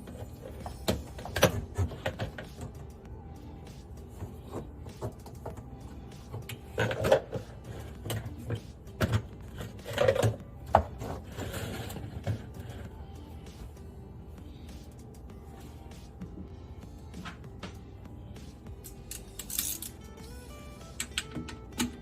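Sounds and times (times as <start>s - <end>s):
clatter of parts and tools: 6.3s - 12.8s, 18.8s - 20.1s.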